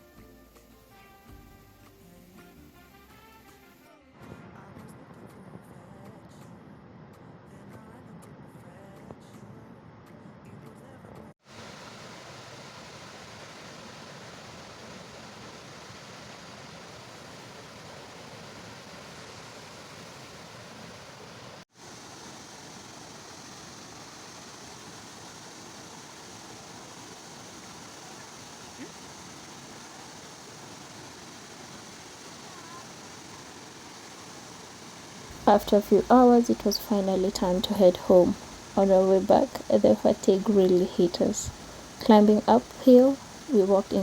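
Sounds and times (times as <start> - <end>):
waterfall rushing: 11.5 - 44.0.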